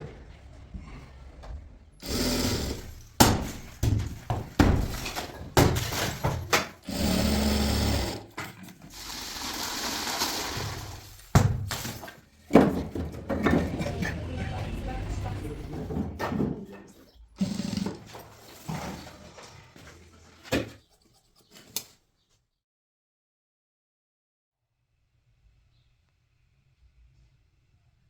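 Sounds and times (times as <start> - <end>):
machine running: 2.0 - 3.9, 6.8 - 8.3, 9.0 - 11.1
knocks and thuds: 2.0 - 6.9, 11.2 - 14.2.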